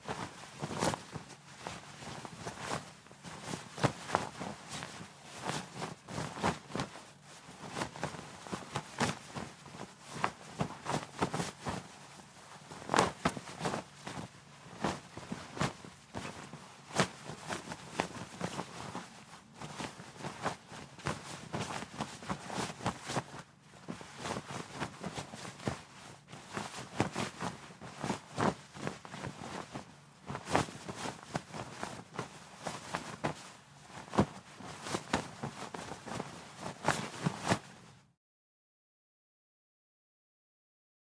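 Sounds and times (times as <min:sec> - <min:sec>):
fabric rustling: 0:00.0 - 0:38.2
fabric snapping: 0:07.6 - 0:11.8, 0:26.5 - 0:37.8.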